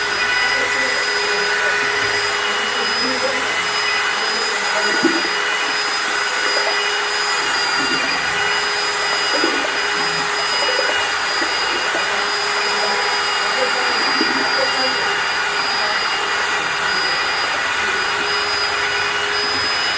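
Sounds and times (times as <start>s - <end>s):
electric grinder whine: 0.0s - 19.9s.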